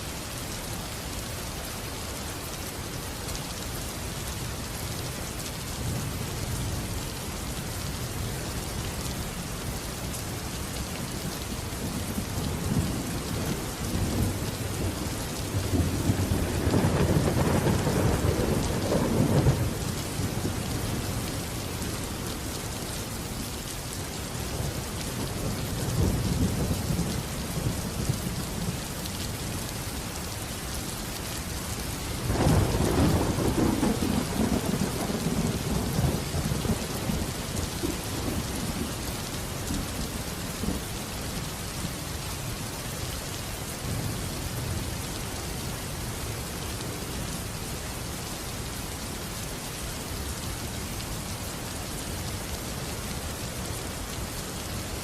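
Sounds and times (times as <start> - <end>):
steady rain falling: 0.0 - 55.0
thunder rumbling: 12.0 - 21.2, 32.2 - 39.0.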